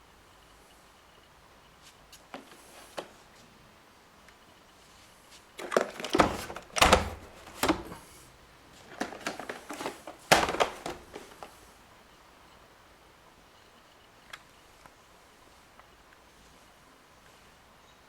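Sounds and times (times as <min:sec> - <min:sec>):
robot vacuum knocks and clicks: 0:09.0 - 0:11.4.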